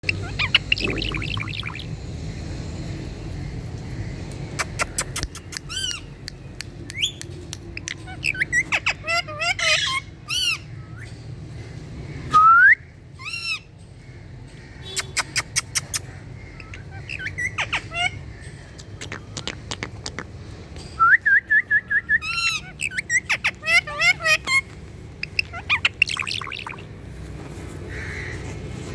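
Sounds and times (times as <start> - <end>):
parrot chirping and squawking: 0.0 - 2.5, 4.5 - 6.2, 7.0 - 10.8, 13.2 - 13.8, 14.9 - 20.4, 22.0 - 27.1
steady low hum: 0.0 - 9.1
parrot whistling: 0.1 - 1.9, 25.2 - 26.8.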